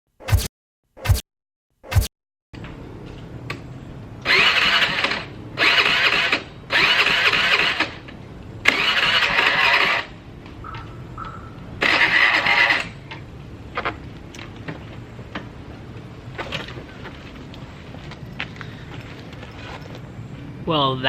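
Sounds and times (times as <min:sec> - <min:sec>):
short sharp thump: 0:00.2 - 0:01.2
scooter starter cranking: 0:04.2 - 0:13.1.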